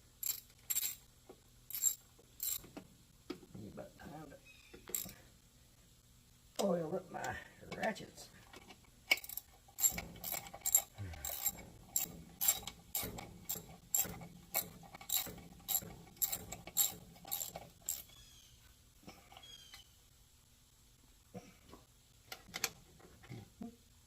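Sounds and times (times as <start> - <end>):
ratchet wrench clicking: 0.2 - 1.0, 1.7 - 2.6, 9.1 - 18.2.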